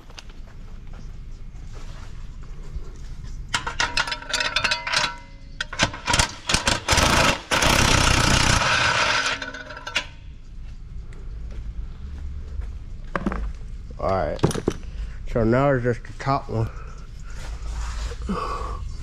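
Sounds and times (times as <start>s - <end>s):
metallic tool clicks and clanks: 3.5s - 10.1s
loud steady tool noise: 6.1s - 10.0s.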